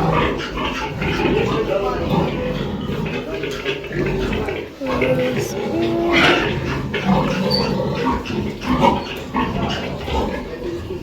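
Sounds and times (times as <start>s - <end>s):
pigs grunting: 0.0s - 11.0s.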